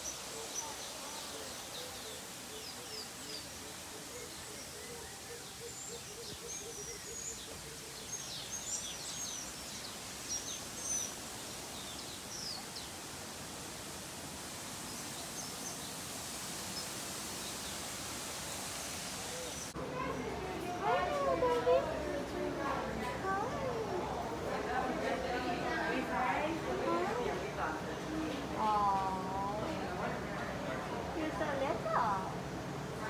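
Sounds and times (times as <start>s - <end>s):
small birds chirping: 0.0s - 13.5s, 14.5s - 20.3s
outdoor background noise: 0.0s - 33.0s.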